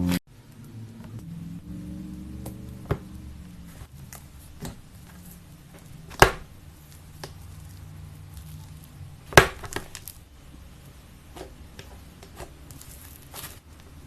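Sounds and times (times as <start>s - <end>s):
low steady hum: 0.0s - 14.0s
slime slapping: 3.7s - 10.2s.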